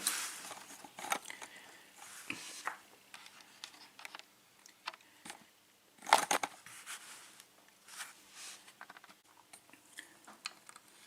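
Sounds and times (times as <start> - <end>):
small metal clicks and scrapes: 0.4 - 1.5.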